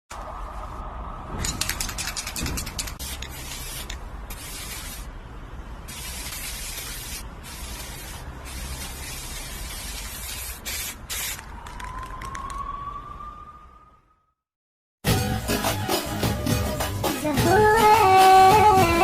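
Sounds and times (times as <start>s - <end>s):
hissing spray bursts: 2.7s - 5.1s, 5.8s - 11.4s.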